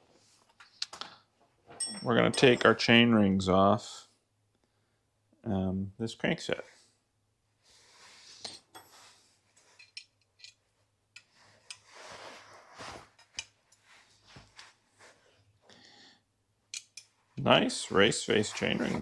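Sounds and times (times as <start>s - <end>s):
light metal clicks and clinks: 1.8s - 2.7s, 9.8s - 10.6s, 16.7s - 17.2s.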